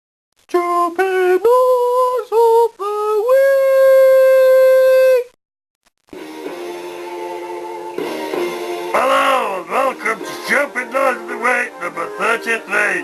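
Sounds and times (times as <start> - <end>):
person singing wordless tune: 0.5 - 5.4, 8.8 - 13.0.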